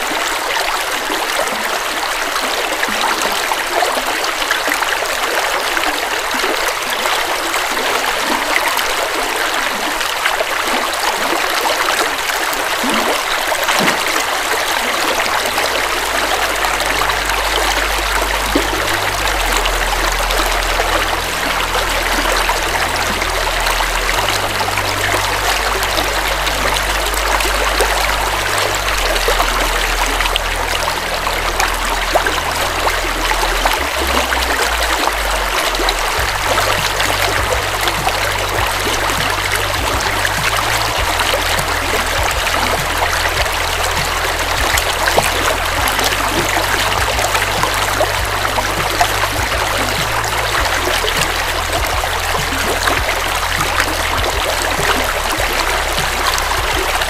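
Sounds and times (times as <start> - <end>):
river water flowing: 0.0 - 57.0
low rumble: 12.8 - 57.0.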